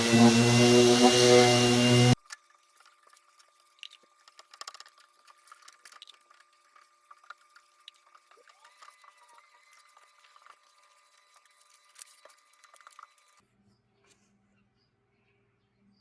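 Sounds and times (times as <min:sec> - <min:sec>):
gliding tone: 0:00.0 - 0:02.2.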